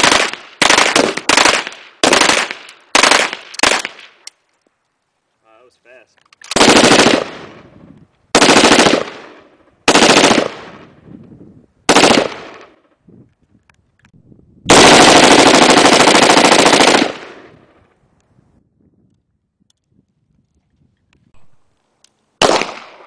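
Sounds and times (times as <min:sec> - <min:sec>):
automatic gunfire bursts: 0:00.0 - 0:04.1, 0:06.5 - 0:07.5, 0:08.3 - 0:09.3, 0:09.9 - 0:10.7, 0:11.9 - 0:12.6, 0:14.7 - 0:17.4, 0:22.4 - 0:23.0
gunfire echo: 0:00.0 - 0:04.2, 0:08.4 - 0:11.0, 0:11.9 - 0:12.8, 0:22.4 - 0:23.0.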